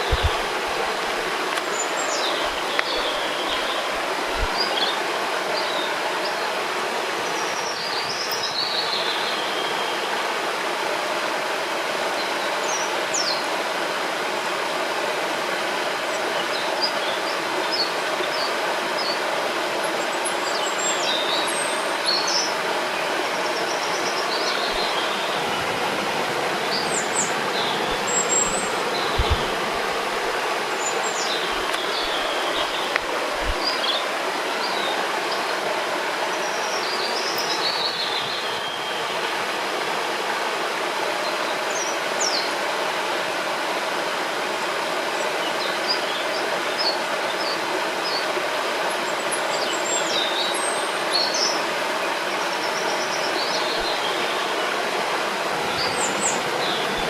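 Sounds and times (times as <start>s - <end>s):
small birds chirping: 0.0s - 5.9s, 20.1s - 35.5s, 55.5s - 57.0s
river flowing: 0.0s - 57.0s.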